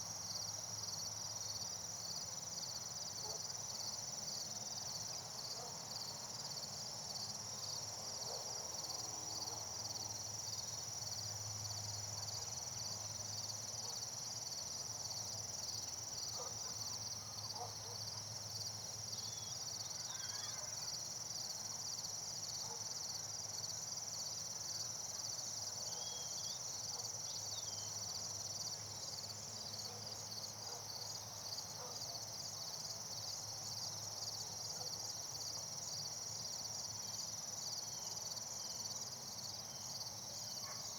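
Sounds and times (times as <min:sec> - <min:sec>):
crickets trilling: 0:00.1 - 0:40.9.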